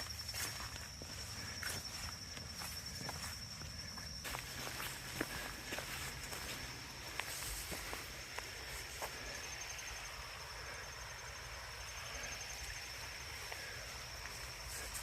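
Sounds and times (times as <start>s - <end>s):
footstep crunches: 0.0s - 9.4s
insect high-pitched trill: 0.0s - 15.0s
pulsing high insect chirp: 0.0s - 15.0s.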